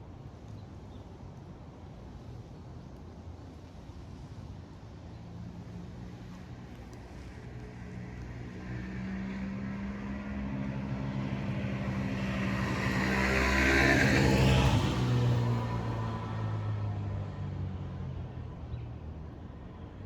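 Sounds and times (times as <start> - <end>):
car engine hum: 9.8 - 16.7.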